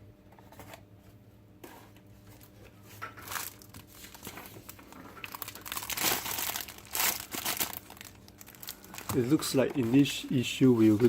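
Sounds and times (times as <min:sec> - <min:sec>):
packaging crinkling: 0:02.3 - 0:11.0.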